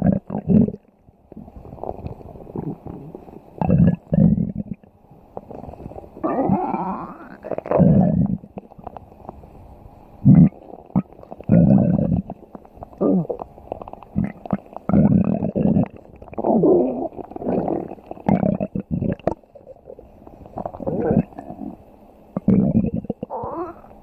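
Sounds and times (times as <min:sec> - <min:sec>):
stomach growling: 0:00.0 - 0:09.4, 0:10.2 - 0:24.0.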